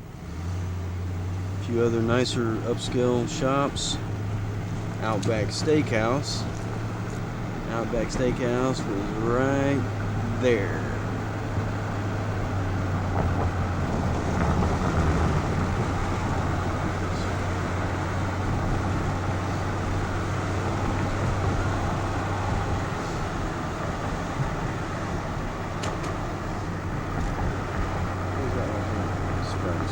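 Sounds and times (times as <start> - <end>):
car engine drone: 0.0 - 29.9
tyre and wind noise: 11.0 - 29.9.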